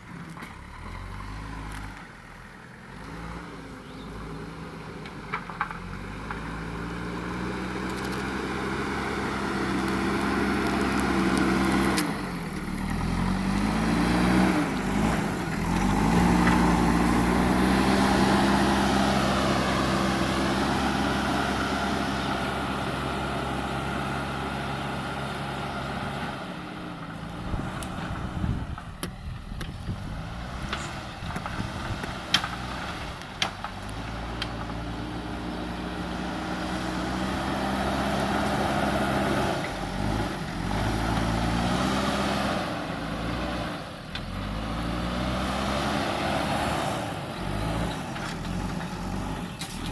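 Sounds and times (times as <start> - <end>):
diesel engine working under load: 0.0 - 49.9.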